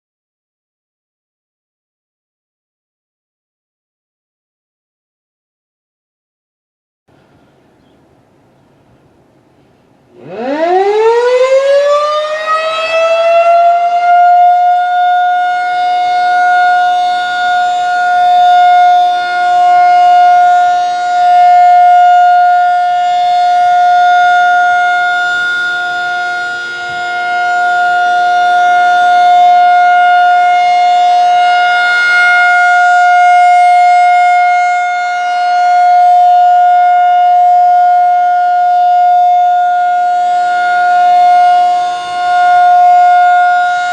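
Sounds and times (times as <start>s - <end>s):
rotating tornado siren: 10.0s - 43.9s.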